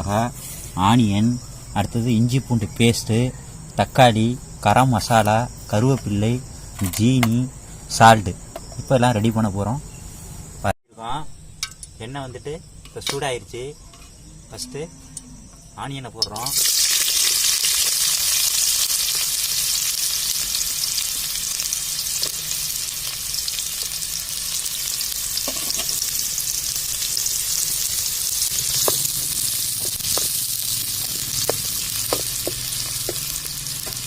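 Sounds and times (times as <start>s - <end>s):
onions sizzling in oil: 16.4s - 34.0s.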